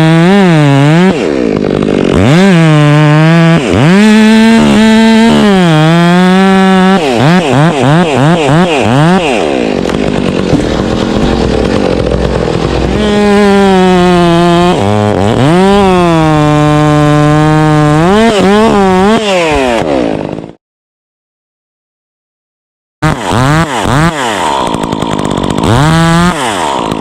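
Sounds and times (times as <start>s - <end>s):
chainsaw revving: 0.0s - 20.6s, 23.0s - 27.0s.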